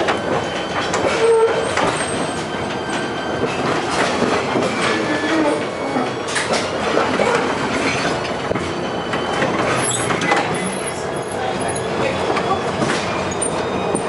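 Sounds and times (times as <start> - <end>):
tram body rattling: 0.0 - 14.0
tram wheels clattering over rail joints: 0.0 - 14.0
high wheel squeals: 0.4 - 3.6, 7.8 - 14.0.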